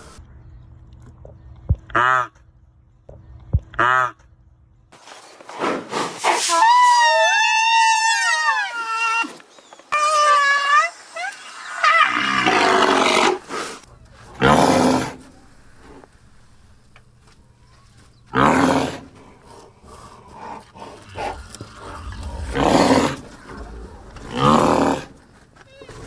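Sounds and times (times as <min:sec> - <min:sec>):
rhinoceros bellowing: 0:11.8 - 0:16.0, 0:18.2 - 0:26.0.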